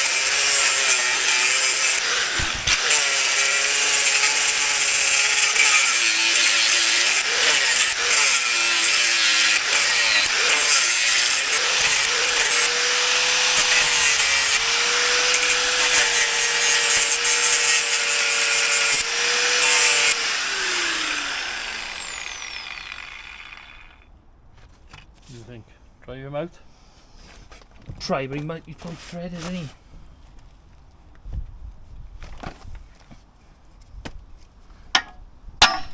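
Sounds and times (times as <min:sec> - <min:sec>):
angle grinder cutting metal: 0:00.0 - 0:24.0.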